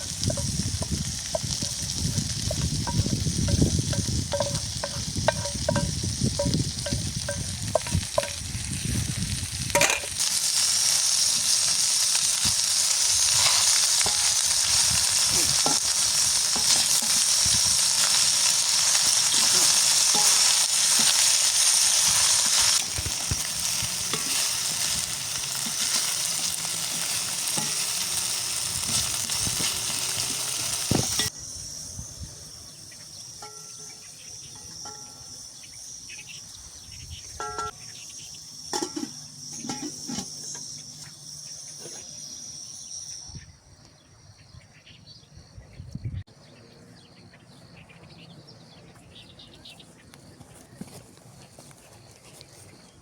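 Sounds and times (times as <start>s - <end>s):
food sizzling in a pan: 0.0s - 31.8s, 37.4s - 43.2s.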